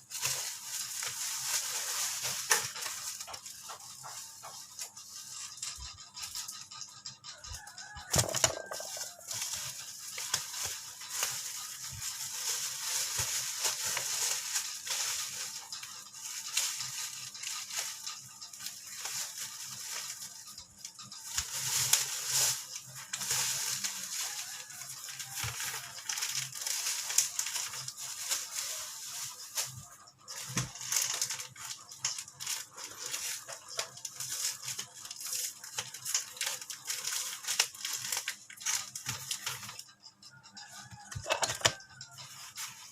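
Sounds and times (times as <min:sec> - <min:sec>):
plastic wrap crinkling: 0:00.0 - 0:42.9
packaging tearing: 0:07.6 - 0:09.2, 0:23.1 - 0:28.0.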